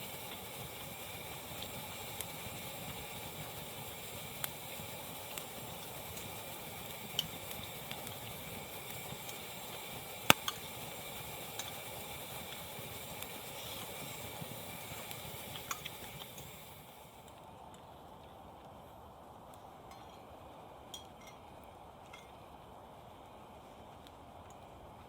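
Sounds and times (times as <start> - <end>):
wood fire hissing and crackling: 0.0 - 19.8, 21.6 - 25.0
fire popping sharply: 0.1 - 17.1.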